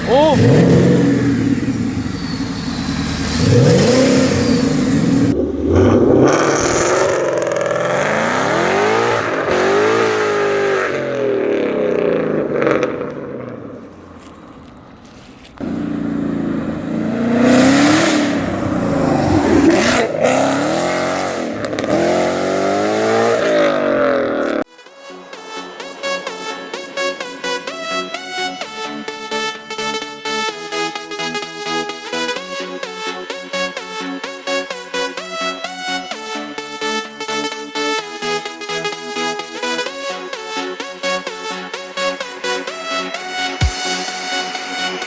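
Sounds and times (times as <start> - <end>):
car engine revving: 0.0 - 24.7.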